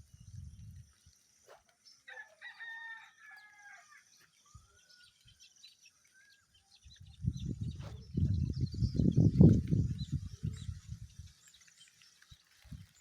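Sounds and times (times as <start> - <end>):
small birds chirping: 0.0 - 13.0
rooster crowing: 2.1 - 4.0.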